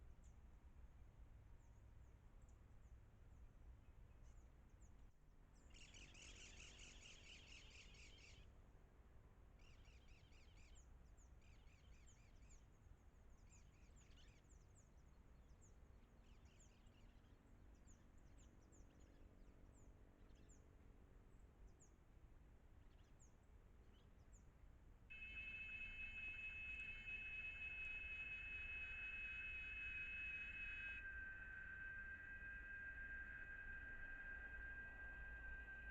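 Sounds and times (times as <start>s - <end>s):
bird trilling: 25.1s - 35.9s
high bird chirps: 25.1s - 35.9s.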